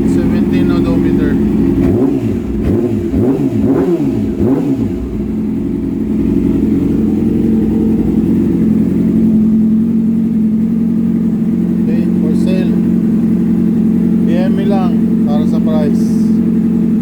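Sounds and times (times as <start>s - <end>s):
motorcycle engine revving and idling: 0.0s - 17.0s.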